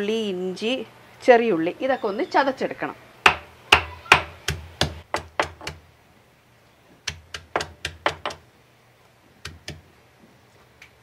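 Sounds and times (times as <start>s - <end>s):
pounding knocks crushing food: 3.3s - 5.8s, 7.1s - 8.4s.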